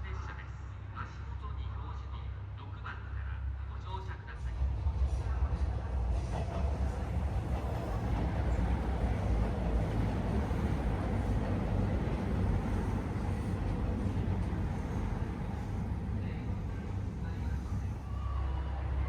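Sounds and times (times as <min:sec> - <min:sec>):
diesel railcar engine rumbling: 0:04.2 - 0:19.0.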